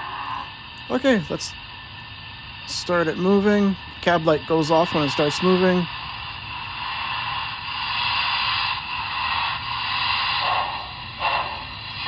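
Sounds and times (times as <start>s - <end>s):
simulated steam exhaust chuffs: 0.0s - 12.0s.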